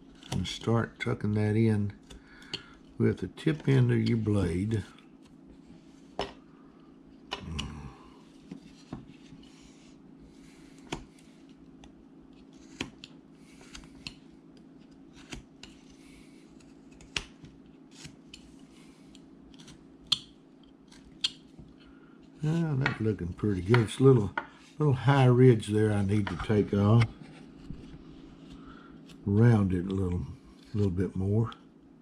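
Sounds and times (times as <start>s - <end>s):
steady low hum: 0.0s - 32.0s
knife scraping wood: 12.3s - 14.2s, 17.9s - 19.8s, 26.0s - 29.2s.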